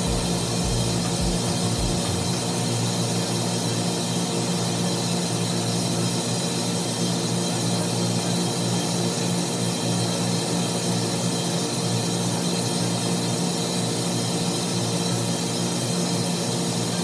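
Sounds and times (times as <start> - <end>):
machinery motor humming: 0.0 - 3.0.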